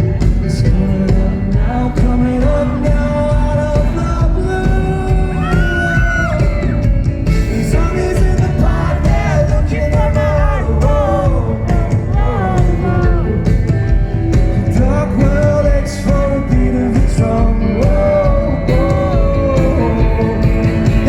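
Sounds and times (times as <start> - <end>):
live rock band: 0.0 - 21.0
person singing: 0.0 - 21.0.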